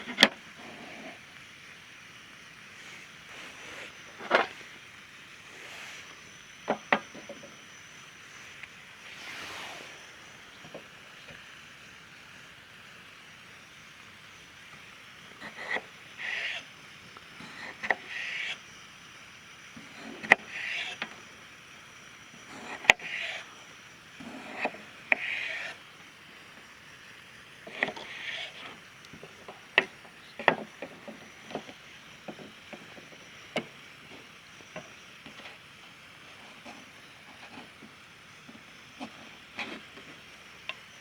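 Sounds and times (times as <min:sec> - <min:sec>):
scraping and rustling: 0:27.7 - 0:40.3.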